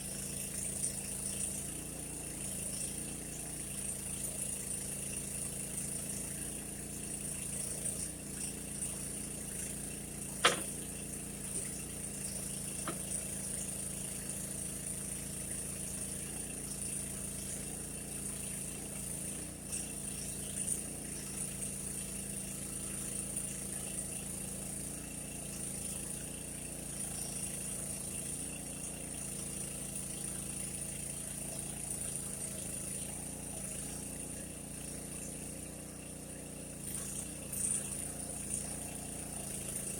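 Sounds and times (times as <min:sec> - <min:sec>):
backhoe engine running: 0:03.4 - 0:20.2.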